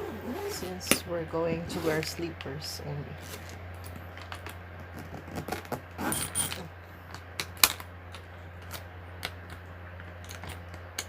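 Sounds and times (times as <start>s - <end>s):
bag rustling scrape: 1.6s - 2.1s.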